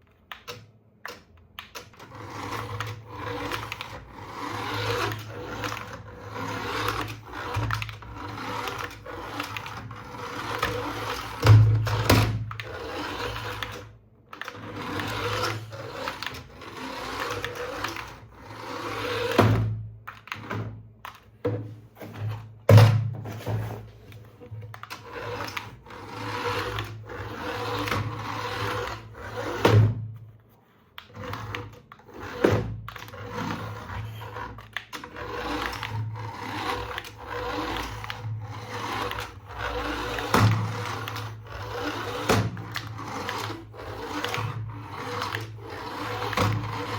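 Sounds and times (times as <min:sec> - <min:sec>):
toy electric motor whirring: 0:01.1 - 0:19.6, 0:24.7 - 0:29.8, 0:31.0 - 0:46.9.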